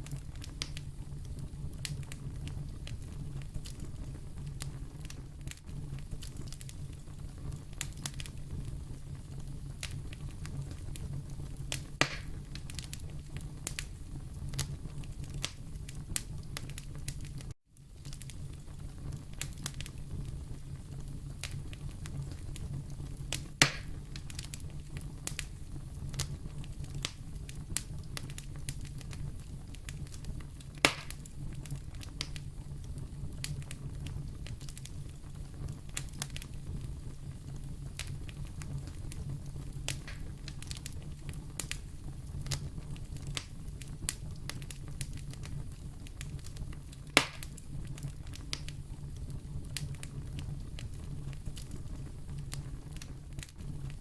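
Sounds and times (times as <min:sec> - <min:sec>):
wood fire crackling: 0:00.0 - 0:54.0
fire loud pops: 0:11.7 - 0:13.9, 0:23.3 - 0:24.6, 0:30.0 - 0:32.4, 0:39.9 - 0:41.0, 0:46.2 - 0:48.8.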